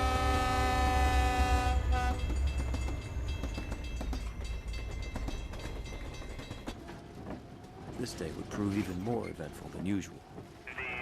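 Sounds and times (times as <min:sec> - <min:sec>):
train horn chord: 0:00.0 - 0:02.2
train wheels clattering on track: 0:01.8 - 0:10.5.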